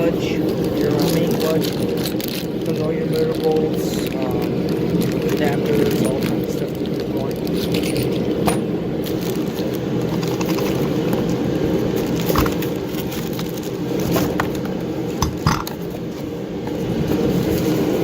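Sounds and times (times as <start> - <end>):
space heater humming: 0.0 - 18.0
parts clicking and knocking: 14.1 - 15.8.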